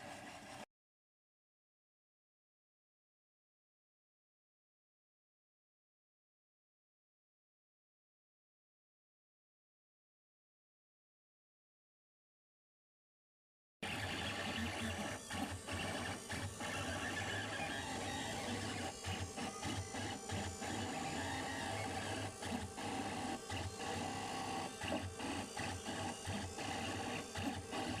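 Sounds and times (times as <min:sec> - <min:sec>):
stepper motors whirring: 0:13.8 - 0:28.0.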